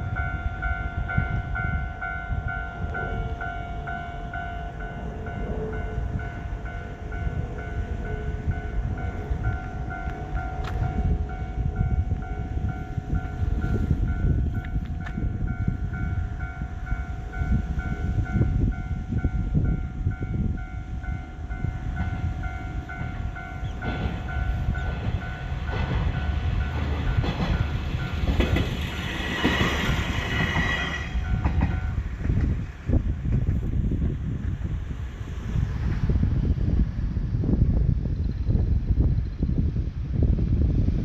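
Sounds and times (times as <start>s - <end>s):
level-crossing warning bell: 0.0s - 32.3s
railcar rumble and rail clatter: 0.0s - 41.0s.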